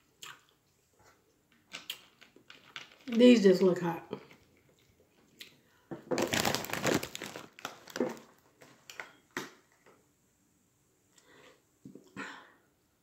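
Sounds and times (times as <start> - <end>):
chip bag crinkling: 1.8 - 3.3, 6.1 - 9.1.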